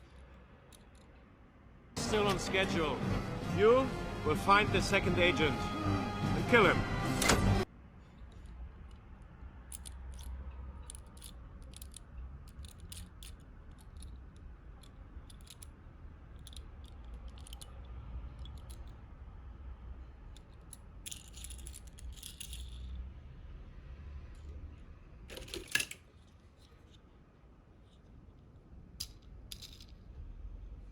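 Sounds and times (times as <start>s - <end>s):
toy cars clinking together: 9.7s - 14.1s, 16.4s - 17.8s, 20.4s - 22.9s.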